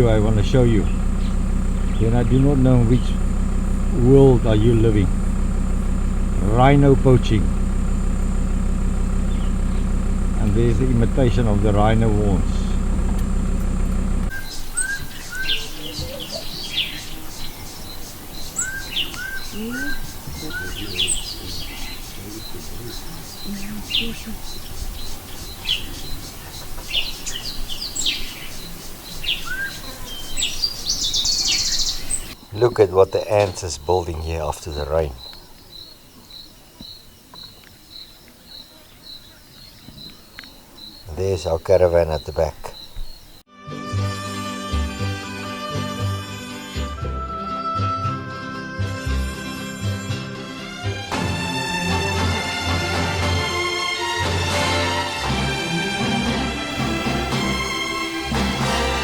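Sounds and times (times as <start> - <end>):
low rising bird notes: 0.0 - 41.6
vehicle engine hum: 0.0 - 43.5, 49.0 - 59.0
high bird chirps: 9.2 - 10.0, 14.3 - 32.8
bird whistling: 14.3 - 32.4
faint clicks: 17.7 - 20.3, 39.6 - 40.6.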